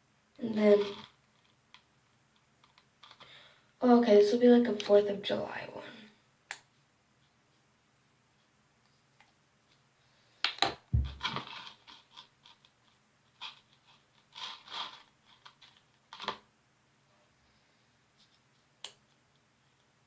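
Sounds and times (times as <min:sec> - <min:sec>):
dull thump: 0:10.9 - 0:11.4.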